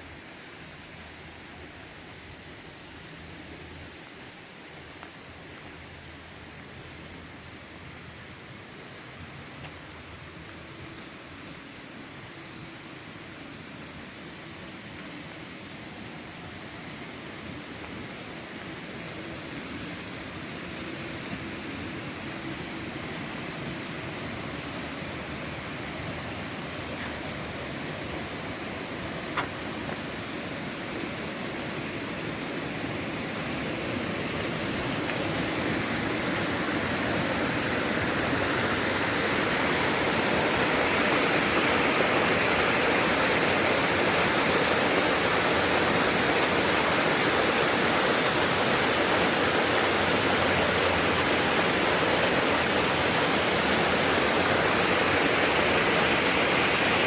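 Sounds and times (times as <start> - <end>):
waterfall roaring: 16.2 - 57.0.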